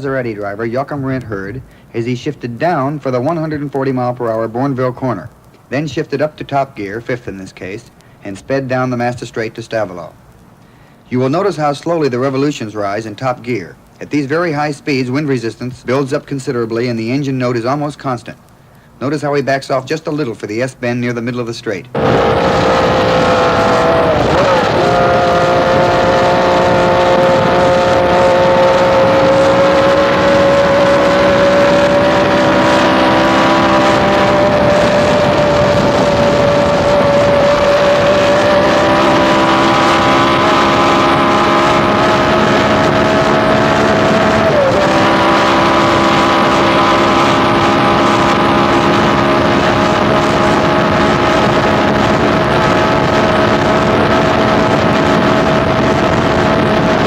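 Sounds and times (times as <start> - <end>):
racing car engine at full throttle: 22.0 - 57.0.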